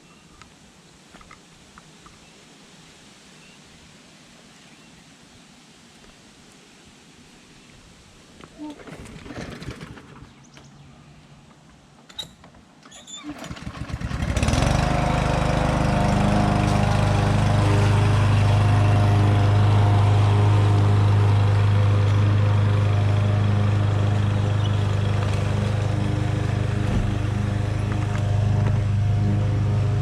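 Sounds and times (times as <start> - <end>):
lawn mower engine running: 8.5 - 10.6, 12.1 - 30.0.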